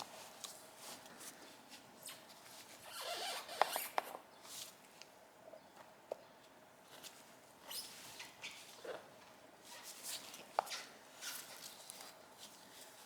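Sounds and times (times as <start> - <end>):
sharp squeaks: 2.8 - 4.2, 7.7 - 8.6.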